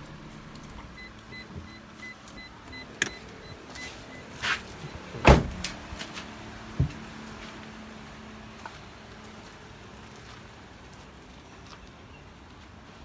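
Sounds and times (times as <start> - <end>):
car alarm rapid beeping: 0.9 - 5.2.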